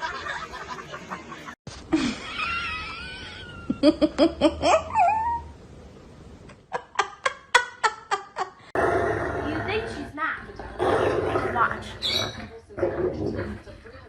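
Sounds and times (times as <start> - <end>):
person laughing: 0.0 - 5.4.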